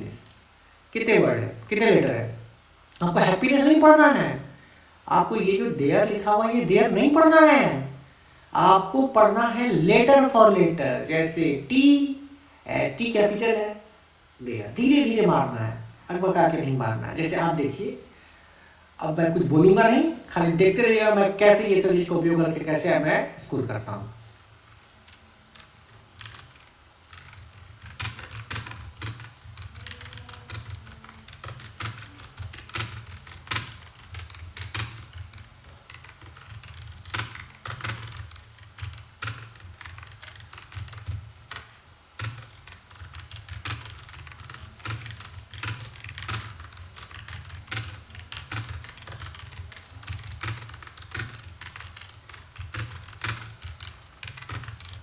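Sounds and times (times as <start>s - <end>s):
fast typing on keyboard: 2.9s - 8.0s, 8.6s - 11.6s, 19.1s - 55.0s.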